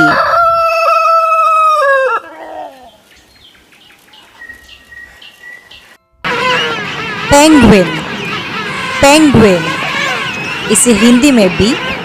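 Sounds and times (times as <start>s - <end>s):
rooster crowing: 0.0s - 3.0s.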